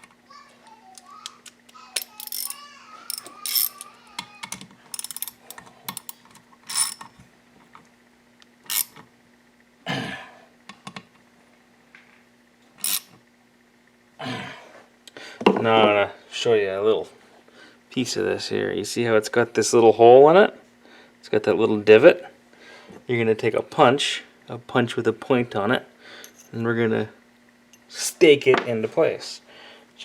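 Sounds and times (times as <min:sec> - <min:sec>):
tools clinking on engine parts: 0:26.2 - 0:26.6.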